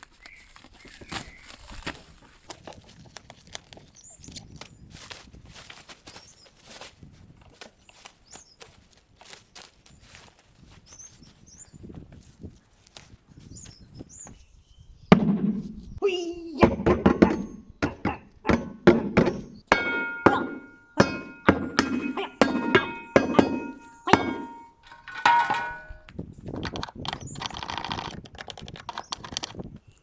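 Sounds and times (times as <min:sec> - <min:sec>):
metal parts clinking: 0:19.7 - 0:28.1.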